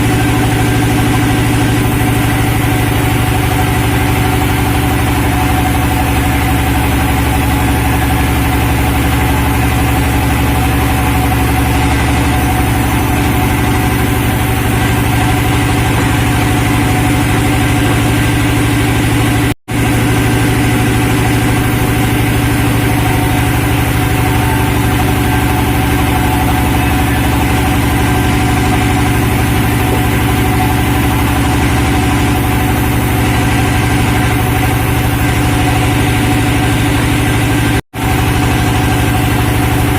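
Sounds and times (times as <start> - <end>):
sawmill machinery drone: 0.0 - 39.9.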